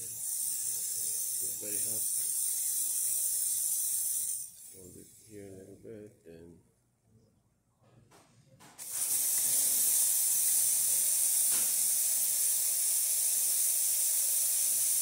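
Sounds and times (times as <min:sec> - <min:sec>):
steam wand hissing: 0:00.0 - 0:05.2, 0:08.8 - 0:15.0.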